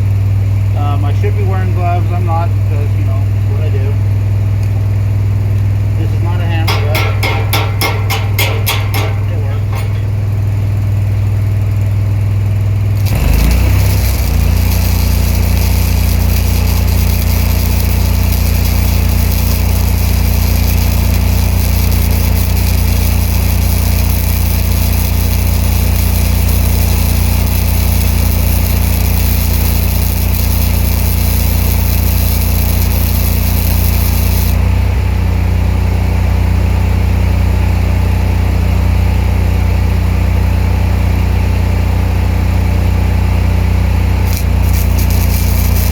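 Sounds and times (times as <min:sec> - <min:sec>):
welder engine running: 0:00.0 - 0:39.4, 0:40.0 - 0:45.9
welding arc crackling and hissing: 0:06.0 - 0:10.3, 0:12.9 - 0:34.8, 0:44.2 - 0:45.9.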